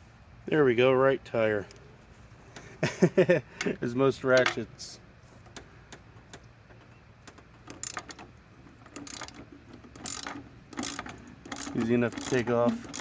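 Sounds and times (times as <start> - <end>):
ratchet clicking: 7.4 - 13.0.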